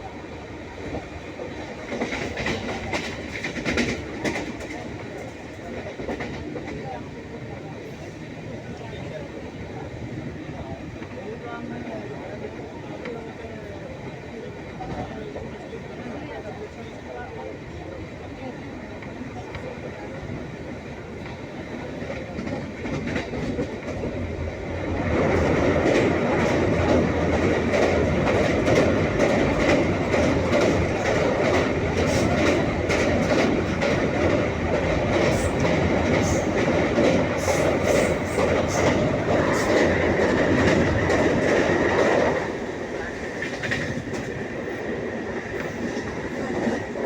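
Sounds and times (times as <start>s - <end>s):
train rumbling along track: 0.0s - 47.0s
wheels clacking over rail joints: 1.7s - 6.8s, 22.2s - 47.0s.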